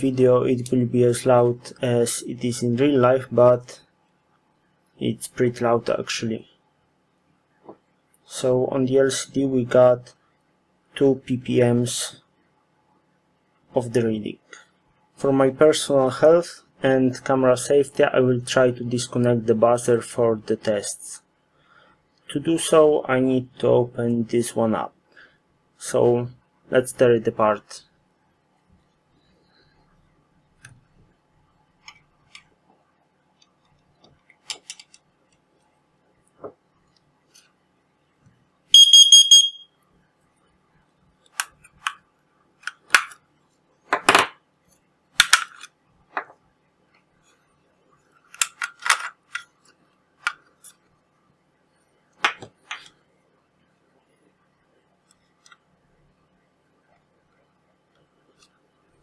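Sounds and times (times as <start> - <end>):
alarm beep: 38.7 - 39.8.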